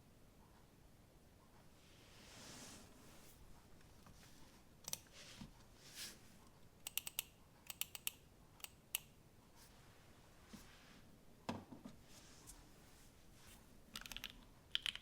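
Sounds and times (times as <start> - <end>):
mechanical keyboard keystrokes: 14.0 - 15.0.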